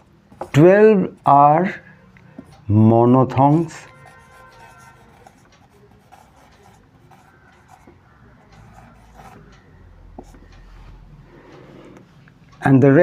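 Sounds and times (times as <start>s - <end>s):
pen scratching on paper: 3.4s - 9.6s.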